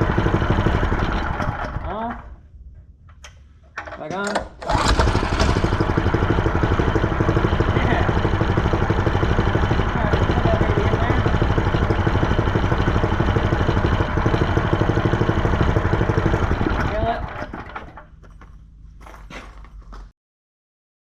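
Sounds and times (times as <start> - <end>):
small engine idling: 0.0 - 2.2, 4.6 - 18.5
recoil starter pull: 3.8 - 18.1.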